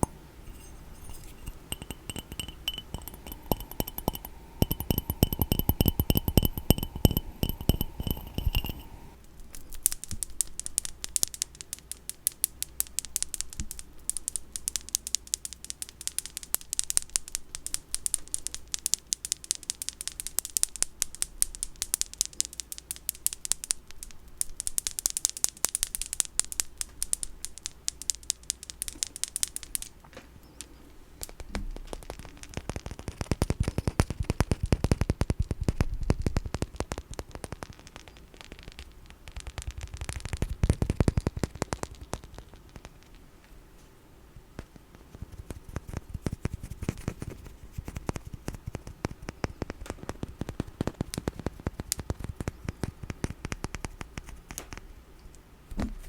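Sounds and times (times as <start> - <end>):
tapping with ringing chime: 0.0 - 9.2
dry fast crackly tapping: 0.0 - 43.6, 44.3 - 56.0.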